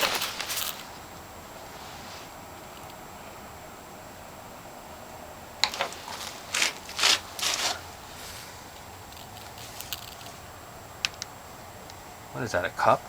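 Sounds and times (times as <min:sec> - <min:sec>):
rustling scrapes in a trunk: 0:00.0 - 0:02.4, 0:05.6 - 0:10.4.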